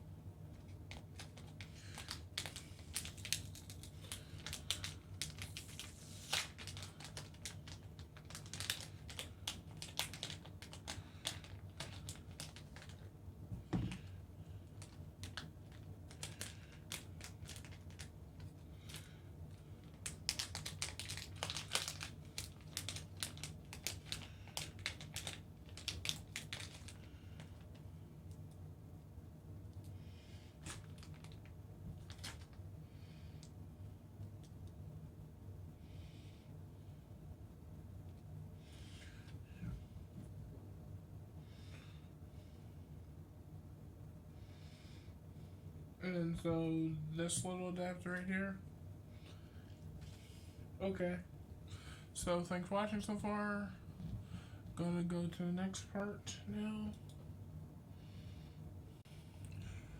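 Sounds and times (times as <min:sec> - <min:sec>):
crinkling: 0:00.5 - 0:28.5, 0:30.6 - 0:32.6.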